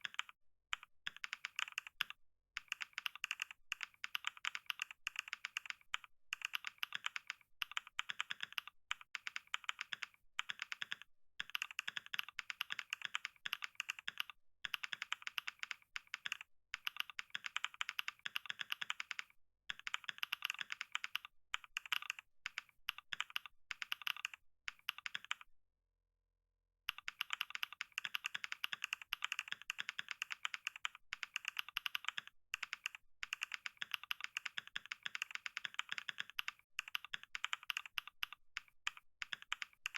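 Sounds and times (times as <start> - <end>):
fast typing on keyboard: 0.0 - 25.5, 26.9 - 39.9.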